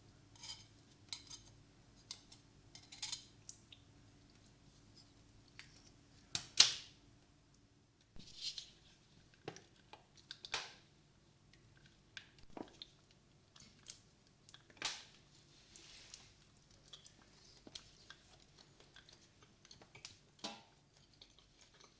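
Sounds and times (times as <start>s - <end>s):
crackling scrapes: 15.5s - 16.4s.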